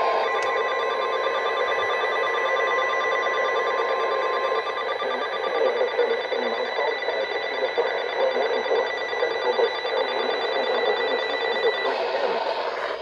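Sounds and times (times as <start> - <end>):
radio static hiss: 3.5 - 13.0.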